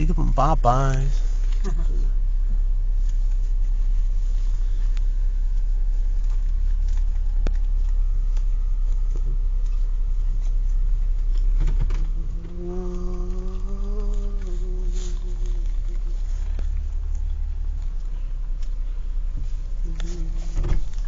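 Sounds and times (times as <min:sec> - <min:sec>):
car engine idling: 0:00.0 - 0:21.0
person humming: 0:12.2 - 0:16.1, 0:19.8 - 0:20.6.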